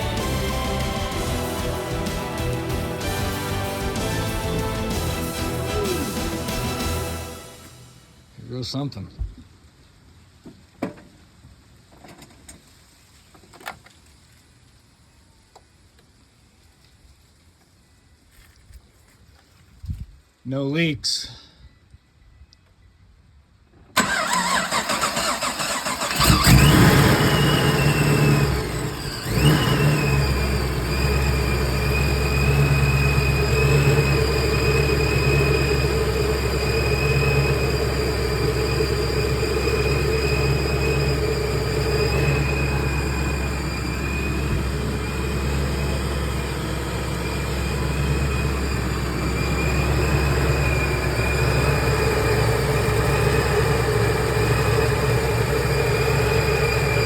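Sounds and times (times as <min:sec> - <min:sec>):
car engine cranking and idling: 0:00.0 - 0:08.0, 0:24.0 - 0:57.0
thin high whine: 0:27.2 - 0:57.0.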